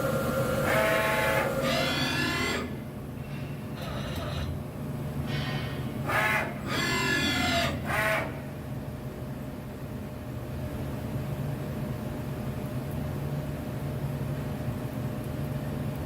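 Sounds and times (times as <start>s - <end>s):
lathe motor whines: 0.0s - 2.6s
low machine hum: 0.0s - 16.0s.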